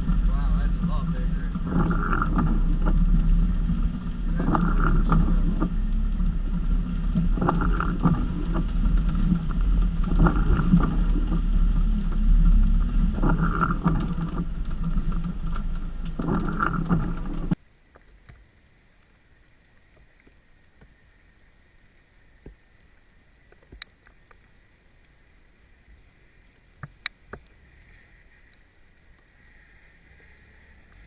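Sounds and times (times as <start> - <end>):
off-road vehicle engine rumbling: 0.0 - 17.6
vehicle knocks on rough trail: 0.0 - 17.6.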